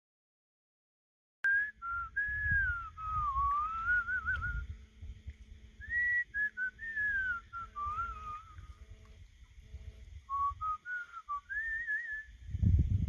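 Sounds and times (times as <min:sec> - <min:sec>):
person whistling: 0:01.5 - 0:04.7, 0:05.8 - 0:08.7, 0:10.3 - 0:12.4.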